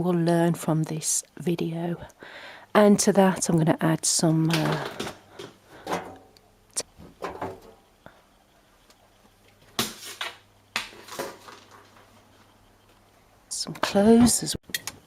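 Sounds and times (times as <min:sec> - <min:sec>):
laundry knocks and rustles: 0:07.0 - 0:07.8.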